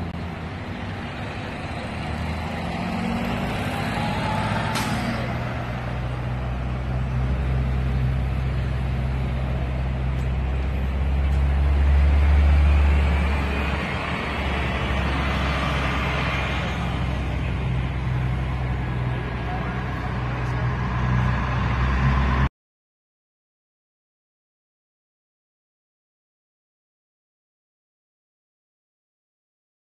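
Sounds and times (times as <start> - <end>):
road traffic noise: 0.0 - 22.5
vehicle engine running: 0.0 - 22.5.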